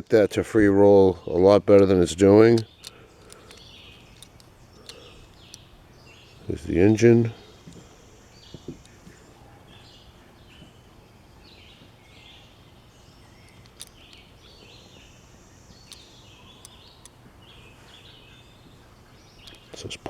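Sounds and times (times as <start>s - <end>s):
songbirds chirping: 0.0s - 20.0s
light sharp clicks: 15.8s - 17.2s, 19.4s - 20.0s.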